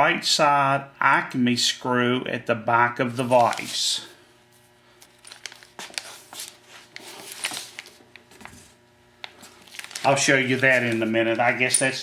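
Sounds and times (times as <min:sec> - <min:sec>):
paper packaging crinkling: 0:03.2 - 0:04.1, 0:05.0 - 0:08.7, 0:09.3 - 0:11.2.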